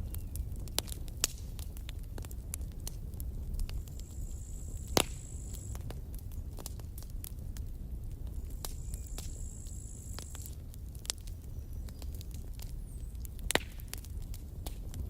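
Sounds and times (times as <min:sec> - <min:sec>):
campfire crackling: 0:00.0 - 0:15.0
high-pitched hiss from burning wood: 0:00.0 - 0:15.0
low rumble of flames: 0:00.0 - 0:15.0
loud pop from fire: 0:03.6 - 0:07.4, 0:08.4 - 0:11.2, 0:13.3 - 0:15.0.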